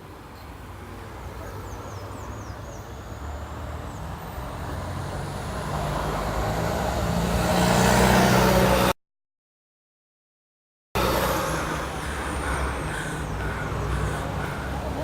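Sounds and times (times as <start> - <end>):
road noise: 0.0 - 9.0, 11.0 - 15.0
motor vehicle engine approaching: 11.0 - 15.0.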